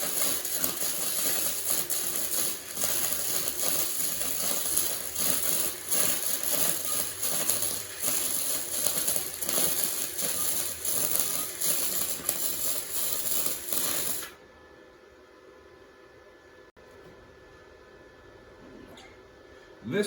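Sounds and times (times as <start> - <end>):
arc welding crackle: 0.0 - 14.4.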